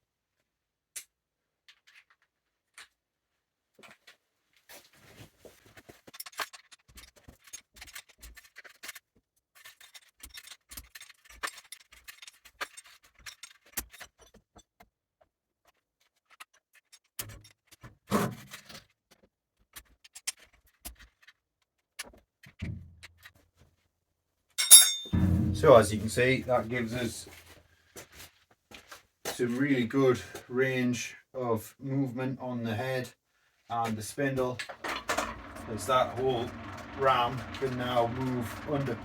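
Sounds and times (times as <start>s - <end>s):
louder metallic knocks: 25.1s - 27.4s.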